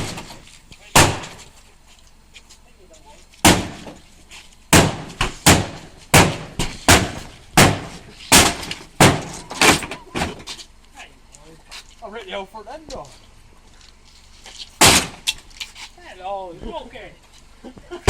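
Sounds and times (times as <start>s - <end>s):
sledgehammer smashing car body: 0.0s - 1.4s, 3.4s - 4.0s, 4.7s - 10.5s, 14.8s - 15.3s.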